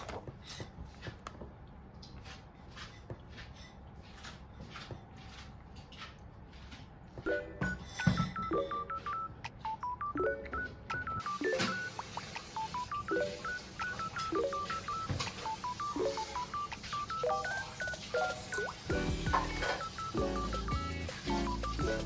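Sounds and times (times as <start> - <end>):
bouncy plinking tune: 7.3 - 22.0.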